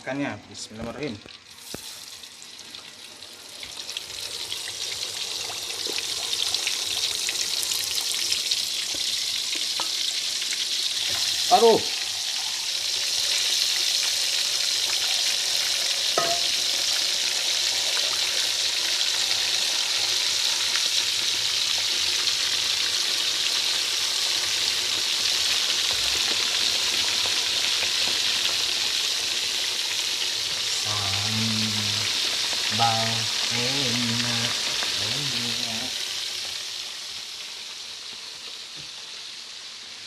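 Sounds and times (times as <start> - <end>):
fish sizzling in hot oil: 0.9 - 40.0.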